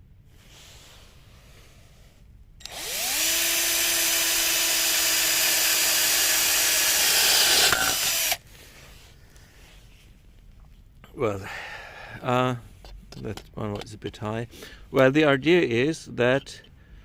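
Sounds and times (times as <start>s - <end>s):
power drill grinding: 2.6s - 8.4s.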